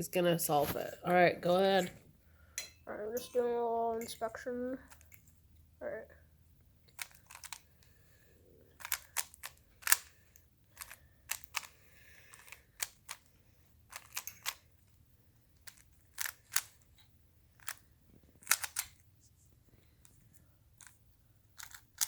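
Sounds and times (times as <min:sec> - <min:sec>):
puzzle cube layers clicking: 0:18.4 - 0:19.0.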